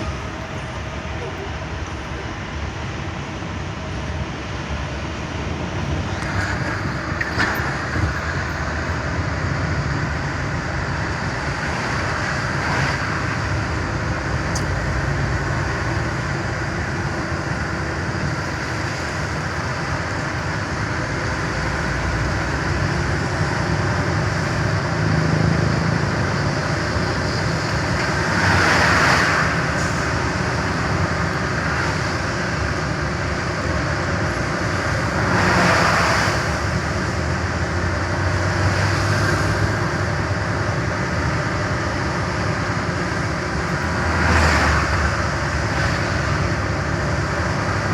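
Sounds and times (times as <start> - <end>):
road noise: 0.0 - 47.9
truck engine drone: 0.0 - 47.9.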